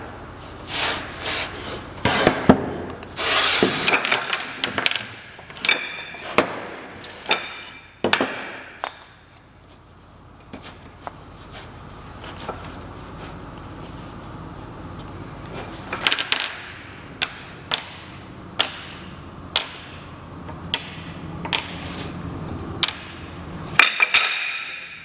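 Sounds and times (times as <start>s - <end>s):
wood and tools knocking: 0.9s - 9.2s, 15.5s - 25.0s.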